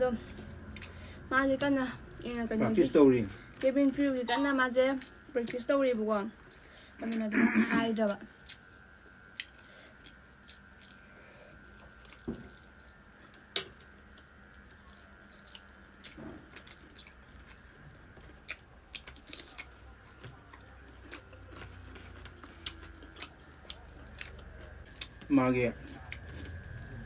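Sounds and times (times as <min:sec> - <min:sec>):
quiet chewing: 0:08.0 - 0:27.0
small crunches: 0:14.1 - 0:27.0.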